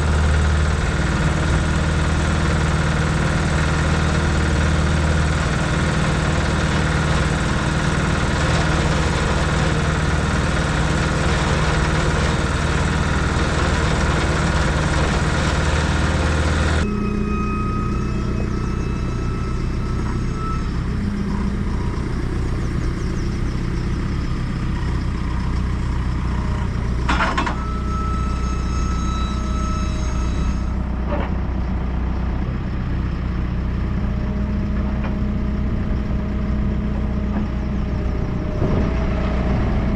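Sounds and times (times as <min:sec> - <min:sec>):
cement mixer engine running: 0:00.0 - 0:39.9.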